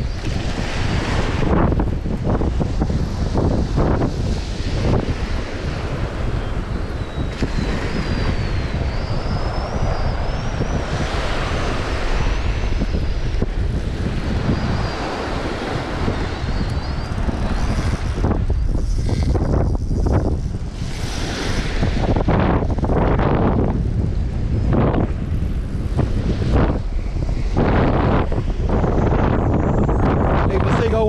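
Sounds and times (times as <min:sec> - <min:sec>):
waves breaking: 0:00.0 - 0:29.4
wind buffeting microphone: 0:00.0 - 0:31.0
high-pitched wavering whistles: 0:06.4 - 0:11.6, 0:14.4 - 0:20.2.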